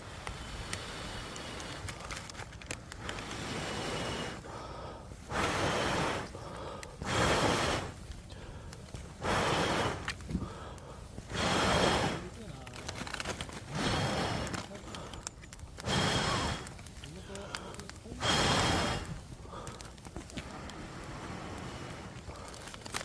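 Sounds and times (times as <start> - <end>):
person blowing hard: 5.2 - 6.4, 7.0 - 8.0, 9.1 - 10.5, 11.2 - 12.3, 13.6 - 14.7, 15.7 - 16.8, 18.2 - 19.5.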